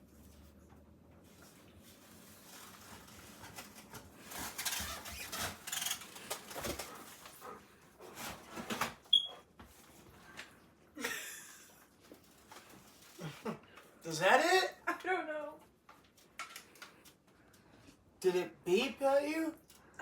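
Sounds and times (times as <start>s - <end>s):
smoke alarm chirp: 9.1s - 9.4s.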